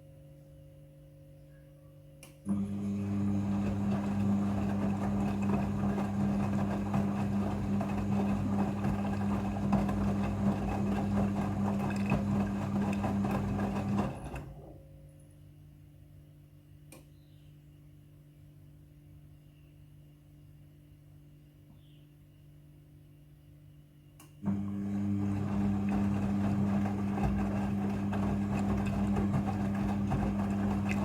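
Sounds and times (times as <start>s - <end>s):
washing machine churning: 2.5s - 14.7s, 24.5s - 31.0s
faint click: 24.2s - 24.4s.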